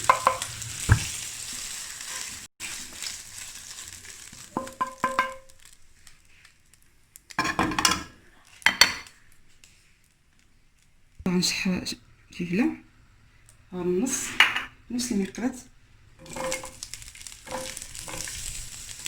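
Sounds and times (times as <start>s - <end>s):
shrimp sizzling in oil: 0.0s - 8.0s, 13.0s - 19.0s
utensil clinking against pan: 0.1s - 1.1s, 16.2s - 16.8s, 17.4s - 19.0s
scraping sounds: 16.2s - 19.0s.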